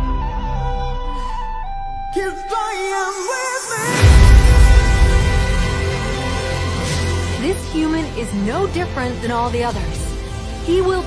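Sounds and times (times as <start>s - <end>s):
flute slow melody: 0.0s - 7.3s
low bass: 4.0s - 11.0s.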